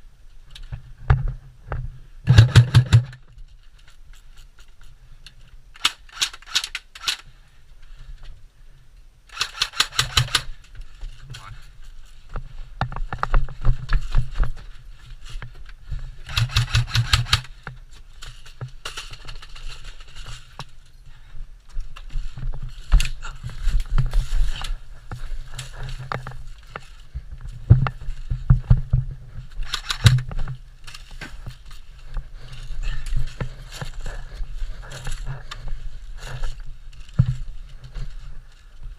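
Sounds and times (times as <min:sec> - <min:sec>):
rustle and scrape of movement: 0:00.0 - 0:38.9
airsoft guns firing bursts: 0:02.3 - 0:03.2, 0:09.3 - 0:10.5, 0:16.3 - 0:17.5, 0:29.6 - 0:30.2.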